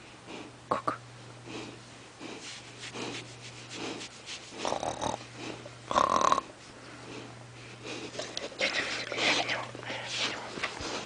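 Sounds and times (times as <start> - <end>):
dog making breathy noises: 1.4 - 5.8, 6.9 - 11.0.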